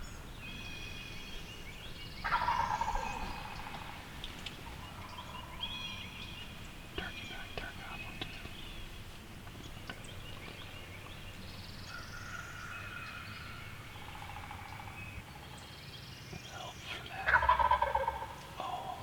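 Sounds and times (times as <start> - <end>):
turkey gobble: 2.2 - 4.0, 17.0 - 19.0.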